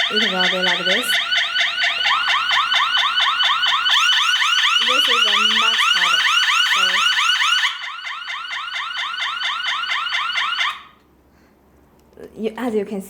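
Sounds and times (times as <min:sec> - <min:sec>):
warbling alarm chirp: 0:00.0 - 0:11.0.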